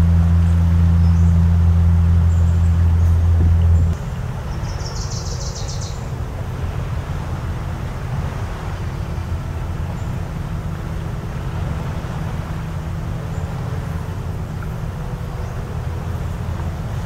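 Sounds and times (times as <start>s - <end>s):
low shoreline rumble: 0.0s - 17.0s
faint bird chirps: 2.3s - 6.1s.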